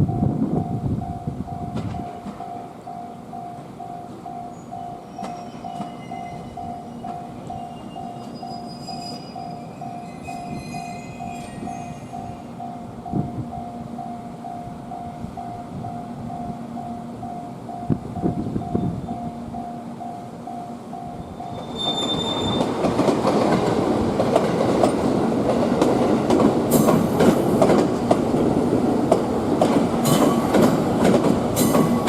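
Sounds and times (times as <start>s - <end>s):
train rolling with low hum: 0.0s - 32.0s
high wheel squeals: 4.5s - 12.5s, 21.2s - 23.0s.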